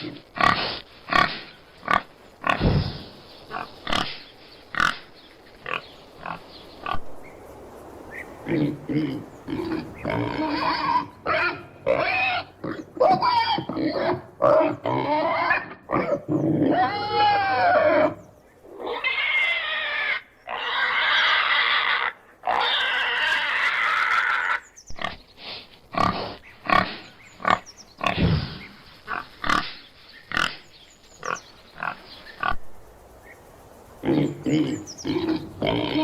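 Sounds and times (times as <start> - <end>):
pig grunting: 0.0 - 4.2, 8.4 - 19.3, 20.1 - 30.6, 34.0 - 36.0
pig squealing: 9.5 - 25.2.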